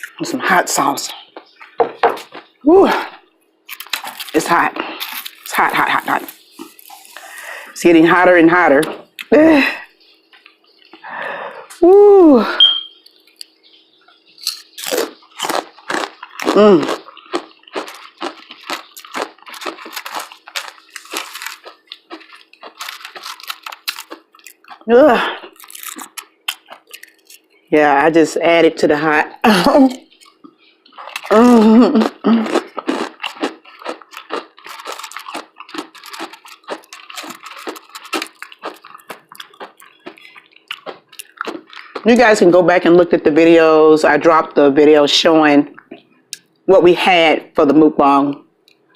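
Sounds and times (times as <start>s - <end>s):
crunchy chips being chewed: 0.0s - 2.6s, 3.6s - 7.6s, 14.3s - 27.6s, 29.9s - 42.4s.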